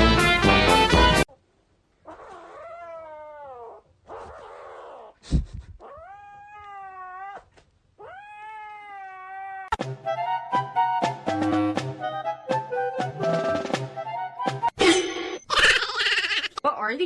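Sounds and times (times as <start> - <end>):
cat yowling: 2.0 - 5.2, 5.8 - 9.8.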